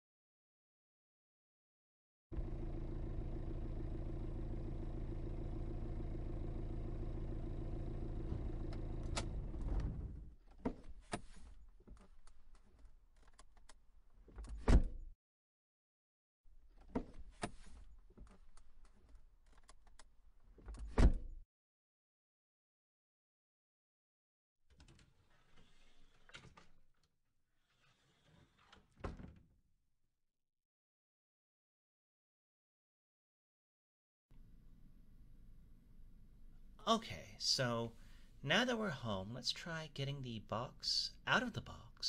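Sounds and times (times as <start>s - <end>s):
car engine running: 2.4s - 10.3s
car door shutting: 8.2s - 10.8s.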